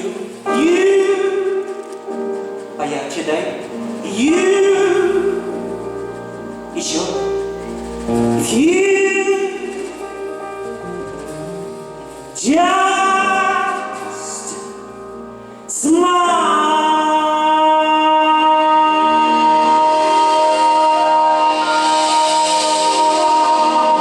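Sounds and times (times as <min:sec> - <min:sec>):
musical accompaniment: 0:00.0 - 0:24.0
person singing long held notes: 0:15.6 - 0:24.0.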